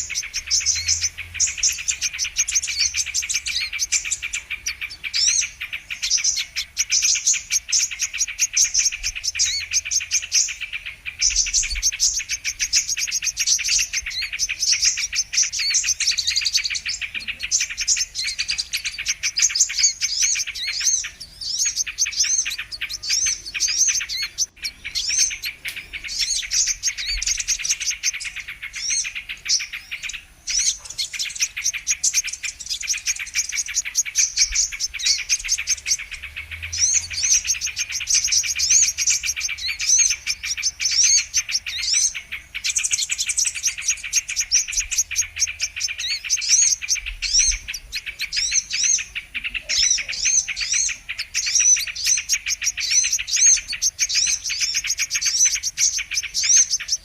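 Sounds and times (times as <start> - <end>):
sunbird chirping and trilling: 0.0 - 57.0.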